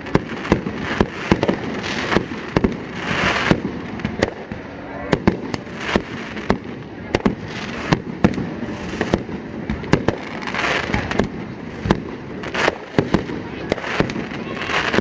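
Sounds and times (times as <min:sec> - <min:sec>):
fireworks bangs: 0:00.0 - 0:15.0
fireworks crackling hiss: 0:00.0 - 0:15.0.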